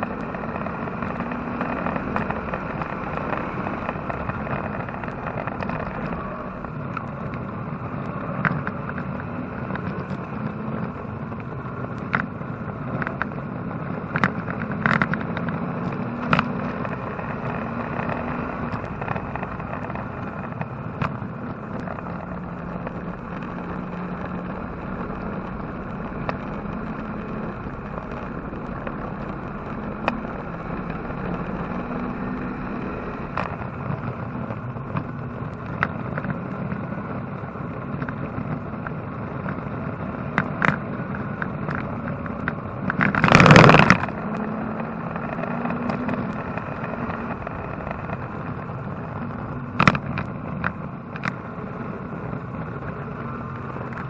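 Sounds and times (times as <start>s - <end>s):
race car engine under load: 0.0s - 54.0s
road and wind noise: 0.0s - 54.0s.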